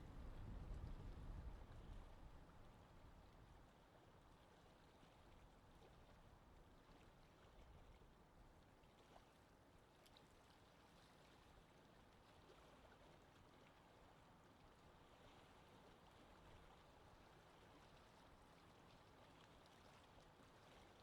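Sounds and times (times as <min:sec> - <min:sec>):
low steady wind rumble: 0:00.0 - 0:03.8.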